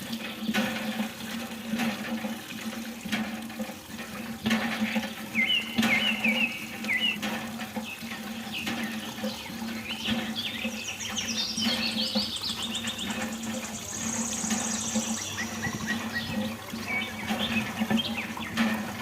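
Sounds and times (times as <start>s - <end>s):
small birds chirping: 5.4s - 7.2s, 7.8s - 18.7s
fast high bird trill: 10.8s - 17.2s.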